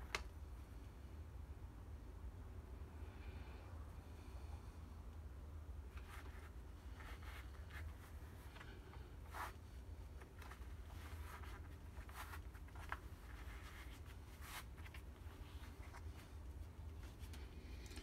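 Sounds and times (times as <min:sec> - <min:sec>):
low steady hum: 0:00.0 - 0:18.0
hands rustling and scraping: 0:05.9 - 0:18.0.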